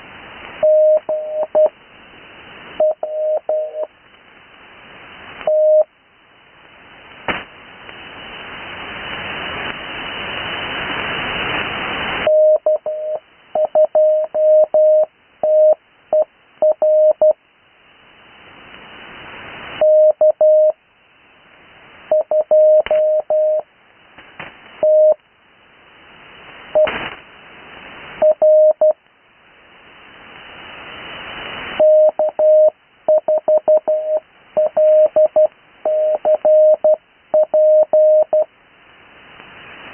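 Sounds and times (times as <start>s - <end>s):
radio band hiss: 0.0s - 16.7s, 20.5s - 39.9s
morse code tone: 0.6s - 1.7s, 2.8s - 3.9s, 12.3s - 17.4s, 19.8s - 20.8s, 22.1s - 23.6s, 24.8s - 25.2s, 31.8s - 38.5s.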